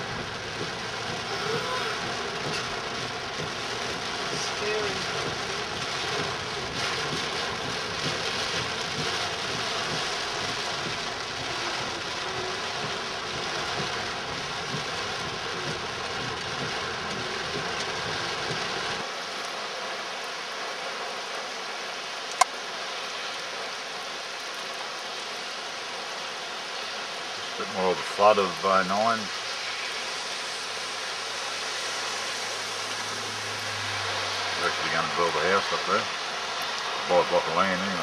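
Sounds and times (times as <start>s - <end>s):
low vehicle rumble: 0.0s - 19.1s, 27.6s - 38.0s
floodwater rushing: 0.0s - 38.0s.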